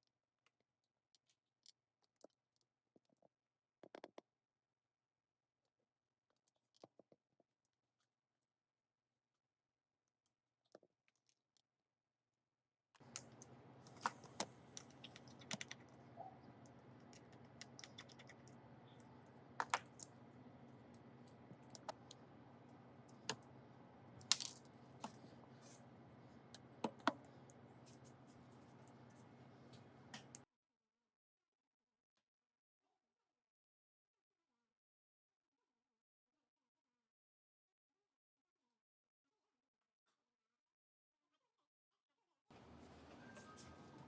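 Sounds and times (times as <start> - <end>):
small tools clicking and tapping: 13.0 - 30.4
steady low hum: 13.0 - 30.4.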